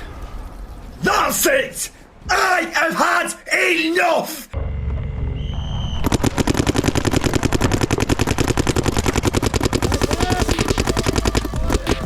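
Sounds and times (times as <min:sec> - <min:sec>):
paintball marker rapid firing: 0:06.0 - 0:12.0.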